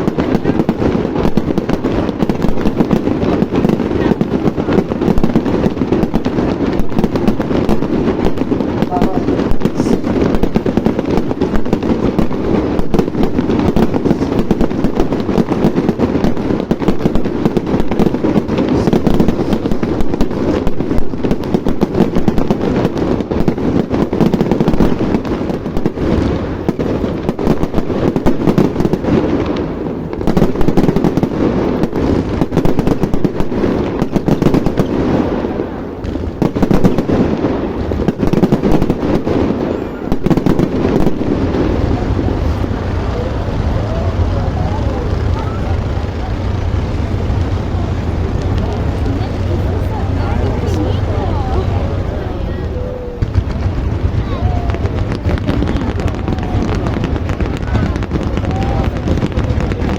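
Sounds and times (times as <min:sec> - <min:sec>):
fireworks bangs and crackling: 0:00.0 - 0:59.9.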